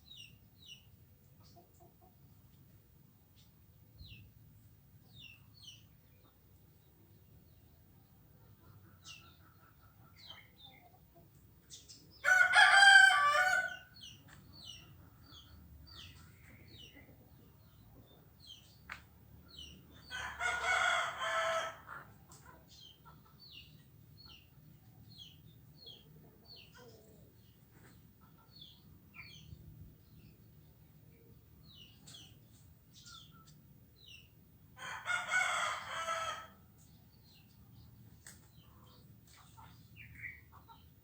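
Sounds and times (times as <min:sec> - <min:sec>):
rooster crowing: 0:12.2 - 0:13.9, 0:34.8 - 0:36.6.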